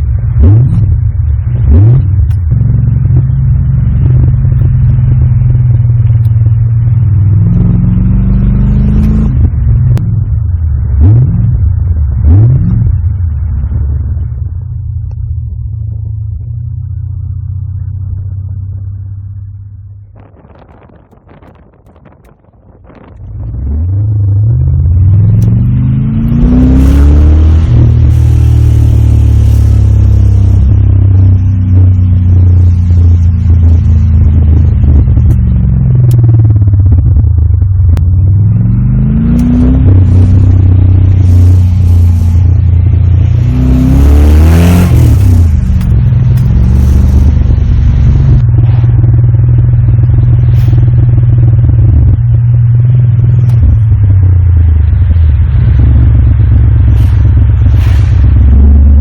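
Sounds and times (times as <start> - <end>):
car engine accelerating: 0.0 - 59.0.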